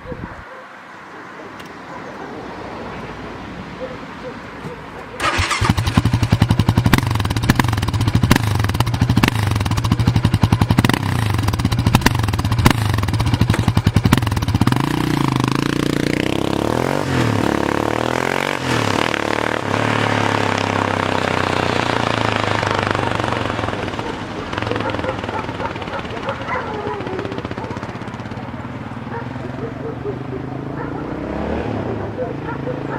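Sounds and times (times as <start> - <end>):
quad engine idling and revving: 4.6 - 32.9.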